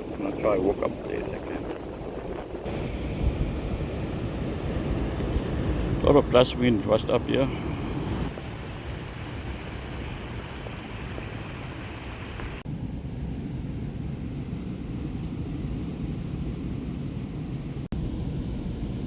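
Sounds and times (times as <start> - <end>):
surf hissing on beach: 0.0 - 12.6
wind rumbling on microphone: 0.0 - 19.0.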